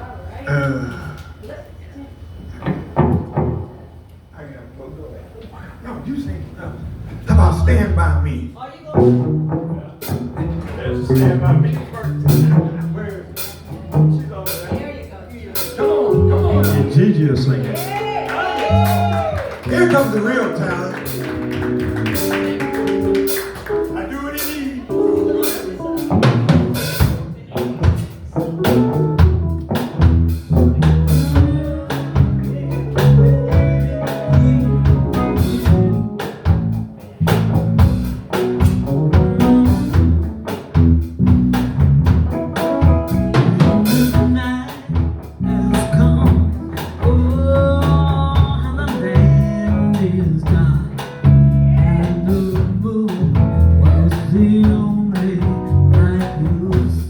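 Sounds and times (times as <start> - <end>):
live blues band playing: 6.9 - 57.0
person singing: 31.1 - 36.1, 39.1 - 40.1, 43.3 - 57.0.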